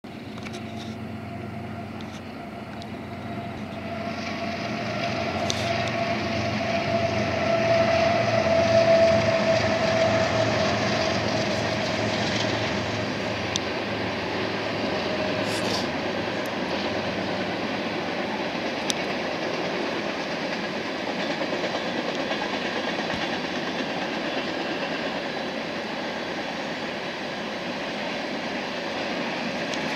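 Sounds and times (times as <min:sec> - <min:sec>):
freight train passing: 0:00.1 - 0:29.9
held horn tone: 0:01.2 - 0:13.6
sharp clicks of train cars: 0:01.9 - 0:29.9.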